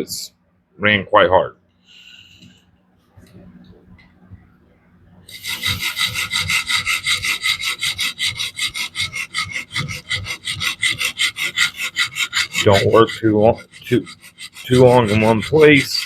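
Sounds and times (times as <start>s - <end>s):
sharpening stone grinding knife edge: 5.4s - 16.0s.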